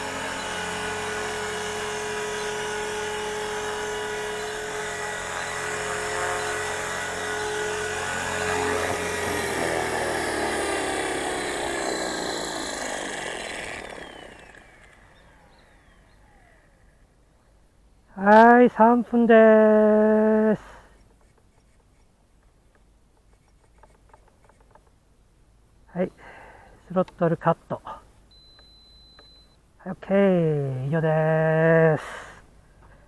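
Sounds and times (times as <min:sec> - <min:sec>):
rc helicopter motor whine: 0:00.0 - 0:17.0.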